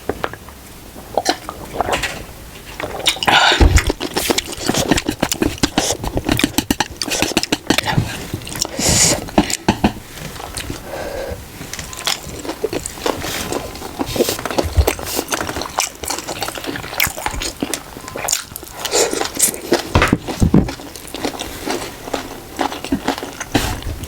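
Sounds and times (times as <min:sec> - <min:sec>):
person chewing food: 0:00.1 - 0:24.0
wet mouth clicks: 0:02.8 - 0:09.7.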